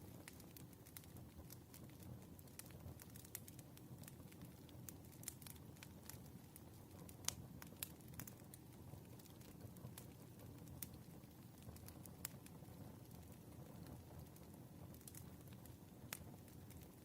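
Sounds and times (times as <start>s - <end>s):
wood fire crackling: 0.0s - 17.0s.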